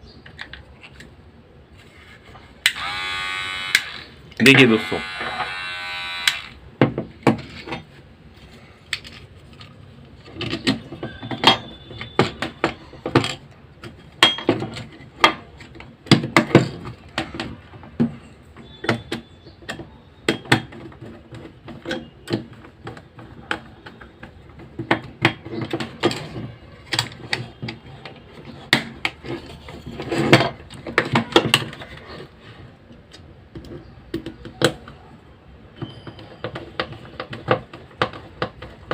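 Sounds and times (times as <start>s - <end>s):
electric hair trimmer buzzing: 2.7s - 6.6s
plastic trimmer being handled: 2.7s - 6.6s.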